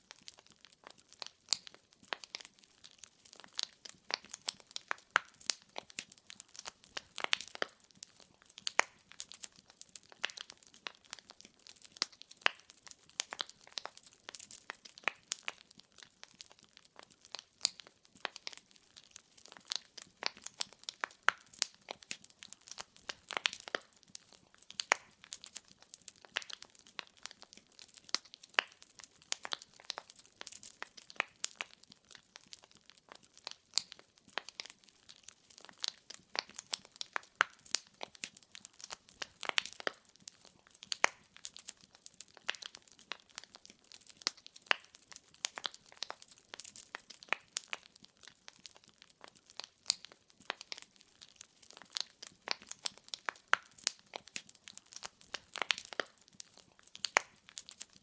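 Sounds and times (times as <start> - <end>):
logs crackling in a fireplace: 0.0 - 58.0
sharp fire pops: 35.5 - 41.7, 51.6 - 57.9.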